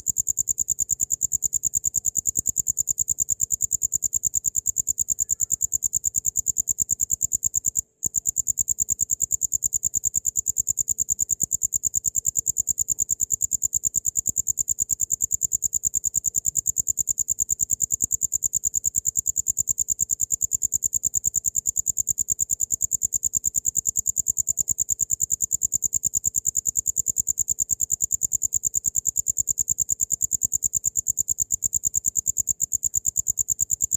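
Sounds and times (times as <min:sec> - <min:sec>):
cricket chirping: 0:00.0 - 0:33.9.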